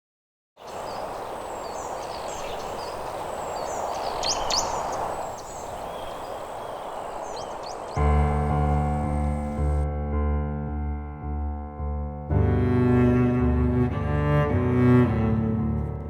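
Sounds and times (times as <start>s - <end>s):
outdoor rustle: 0.6s - 9.8s
small birds chirping: 0.6s - 9.8s
music with deep low notes: 8.0s - 16.0s.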